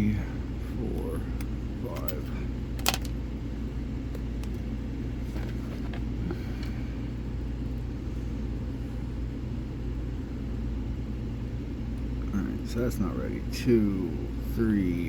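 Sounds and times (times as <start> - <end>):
lock pick clicking: 2.8 - 3.2.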